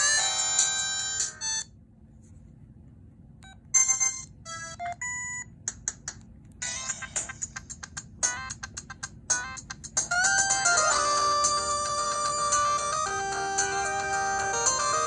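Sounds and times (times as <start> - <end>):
cellphone ringtone melody: 0.0 - 1.7, 3.8 - 5.4, 9.4 - 15.0.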